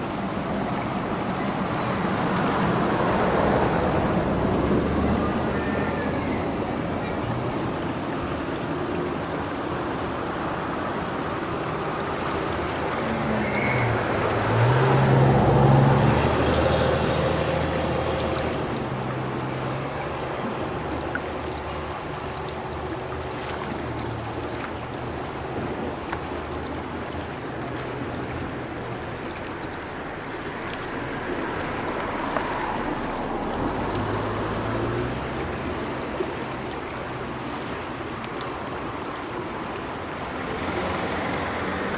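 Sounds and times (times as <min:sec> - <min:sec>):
floodwater rushing: 0:00.0 - 0:41.9
vehicle engine passing: 0:12.6 - 0:20.2, 0:40.2 - 0:41.9.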